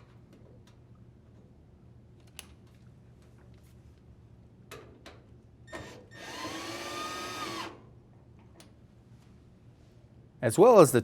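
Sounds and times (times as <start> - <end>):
drill driver driving a screw: 6.2 - 7.7.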